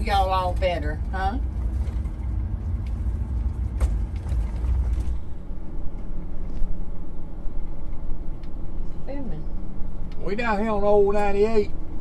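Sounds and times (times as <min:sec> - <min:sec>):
low road rumble: 0:00.0 - 0:12.0.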